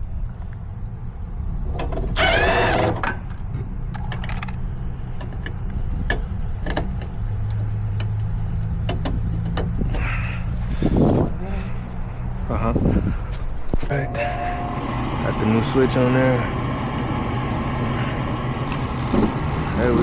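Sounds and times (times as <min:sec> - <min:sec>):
parts and tools clicking: 0:01.8 - 0:10.0
short loud whir: 0:02.2 - 0:03.2
steady low hum: 0:09.8 - 0:20.0.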